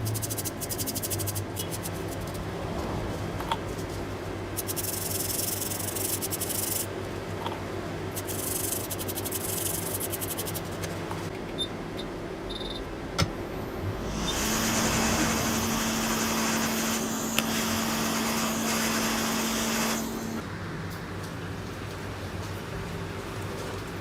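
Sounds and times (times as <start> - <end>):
small brush scrubbing circuit board: 0.0 - 2.4, 4.6 - 6.9, 8.2 - 10.9
low electrical hum: 0.0 - 24.0.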